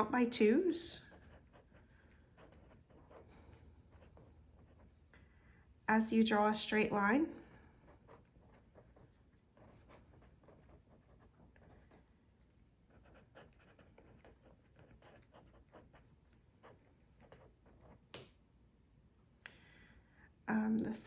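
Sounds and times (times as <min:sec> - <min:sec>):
pen scratching on paper: 0:01.0 - 0:05.0, 0:07.5 - 0:12.2, 0:12.9 - 0:18.1.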